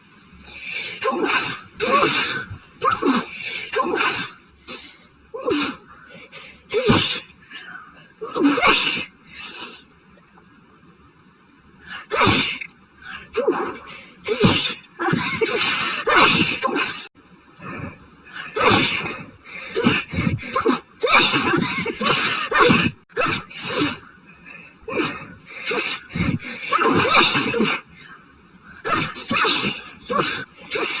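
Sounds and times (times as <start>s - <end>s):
woman sneezing: 14.3s - 17.1s, 18.6s - 24.0s, 25.0s - 27.8s, 28.9s - 31.0s.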